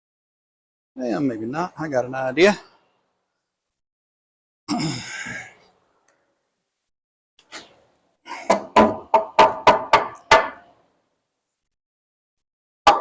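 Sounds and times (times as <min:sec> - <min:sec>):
hammer striking wood: 0:08.5 - 0:10.6.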